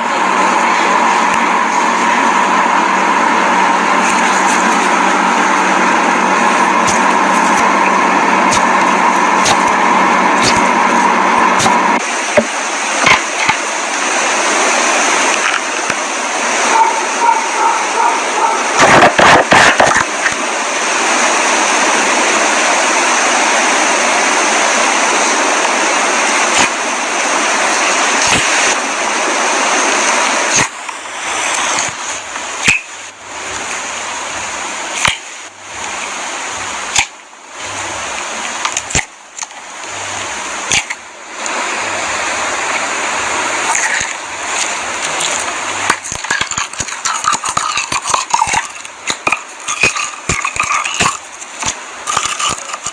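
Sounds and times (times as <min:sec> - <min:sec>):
slime squelching: 0:43.7 - 0:52.9.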